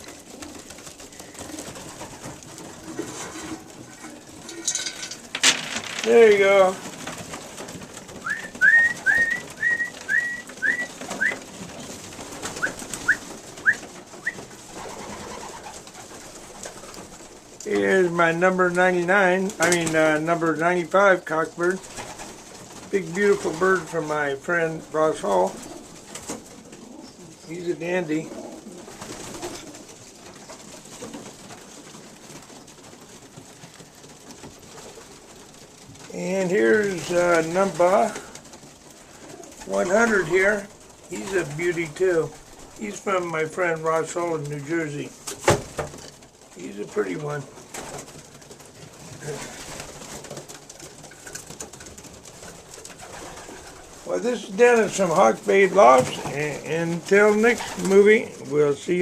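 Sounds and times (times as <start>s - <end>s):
pigeons cooing softly: 0.0s - 5.3s, 6.2s - 43.4s, 46.0s - 59.0s
birds scratching and shuffling: 0.0s - 59.0s
pigeon peeping: 7.2s - 17.5s, 25.5s - 35.9s.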